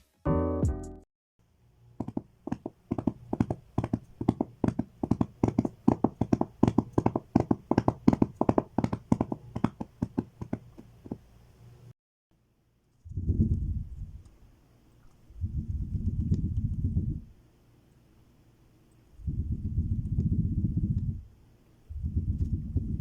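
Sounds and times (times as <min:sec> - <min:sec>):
horse hooves clip-clopping: 0:02.0 - 0:11.2.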